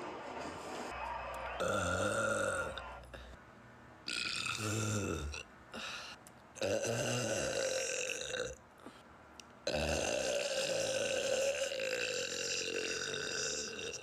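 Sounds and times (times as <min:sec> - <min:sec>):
woman burping: 0:09.7 - 0:14.0.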